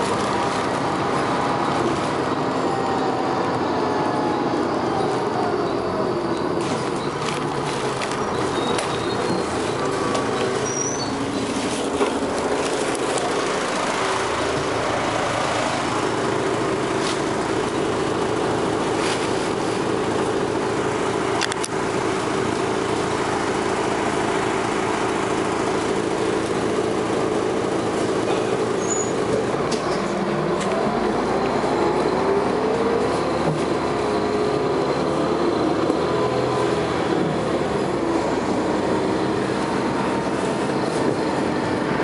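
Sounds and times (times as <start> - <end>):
bus engine running: 0.0 - 42.0.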